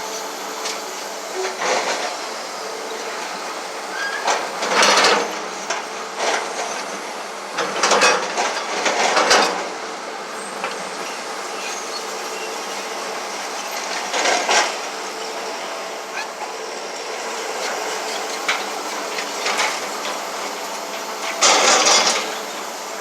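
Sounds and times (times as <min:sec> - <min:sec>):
bulldozer tracks clanking: 0:00.1 - 0:23.0.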